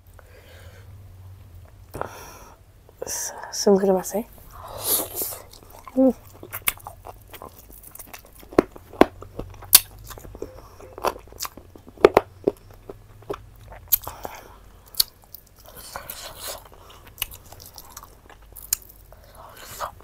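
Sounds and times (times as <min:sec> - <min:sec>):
person chewing: 0:04.5 - 0:20.0.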